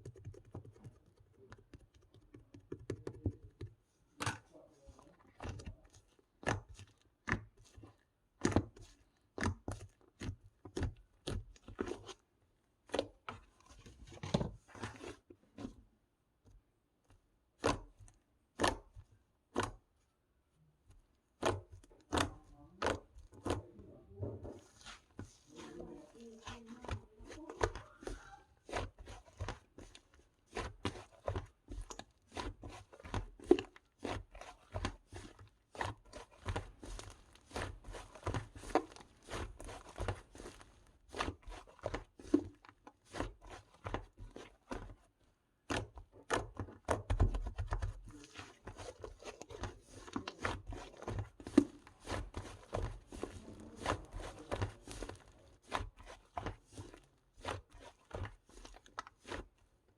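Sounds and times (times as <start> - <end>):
slime crackling and popping: 30.5 - 59.6.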